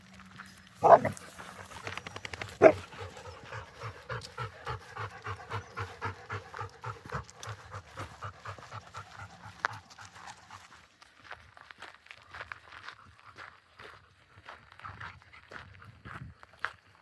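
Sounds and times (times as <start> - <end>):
dog panting: 0.8 - 10.8.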